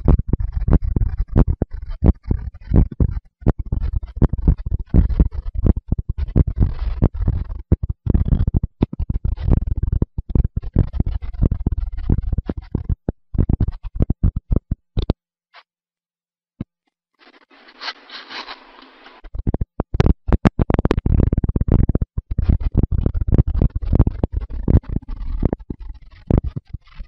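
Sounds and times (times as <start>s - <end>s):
heartbeat thumps: 0.0s - 15.2s, 19.3s - 27.0s
microphone rubbing: 0.0s - 15.7s, 17.2s - 27.0s
hissing scrape: 17.3s - 19.2s.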